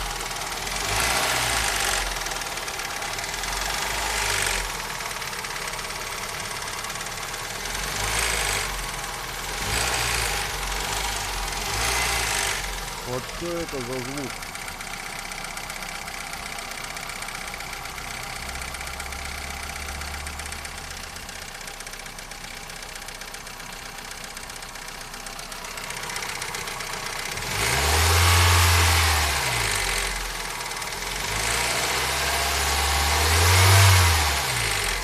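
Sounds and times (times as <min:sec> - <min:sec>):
engine revving: 0:00.0 - 0:14.4, 0:25.7 - 0:35.0
car engine idling with knock: 0:00.0 - 0:29.0.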